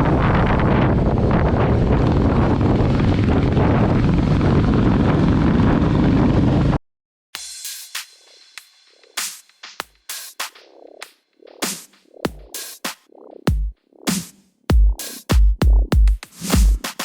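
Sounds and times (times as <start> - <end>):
motorcycle engine running: 0.0 - 6.8
wind buffeting microphone: 0.0 - 6.8.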